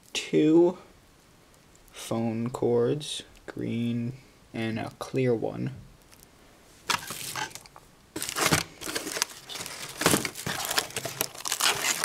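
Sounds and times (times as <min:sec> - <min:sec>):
packaging crinkling and rustling: 0:06.9 - 0:12.0.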